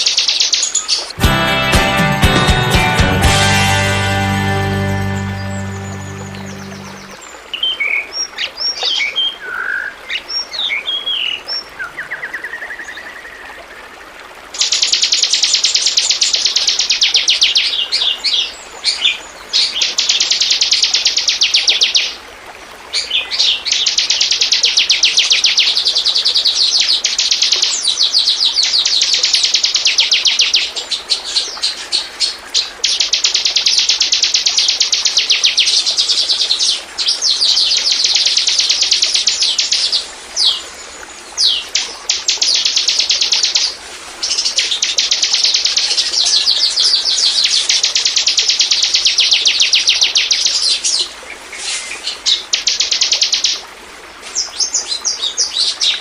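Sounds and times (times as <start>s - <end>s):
bird chirping and trilling: 4.8s - 8.2s, 23.0s - 40.7s, 41.3s - 51.0s.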